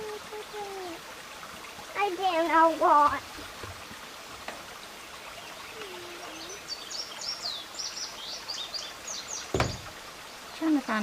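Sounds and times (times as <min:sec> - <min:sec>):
steady outdoor hiss: 0:00.0 - 0:11.0
songbird high chirps: 0:05.0 - 0:10.7.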